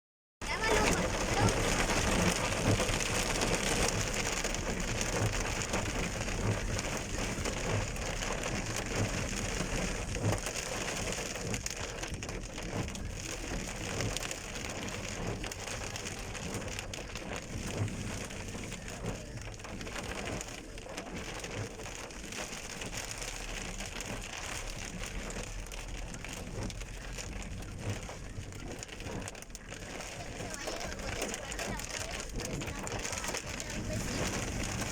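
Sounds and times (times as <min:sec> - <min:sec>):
heavy rain splashing: 0:00.4 - 0:34.9.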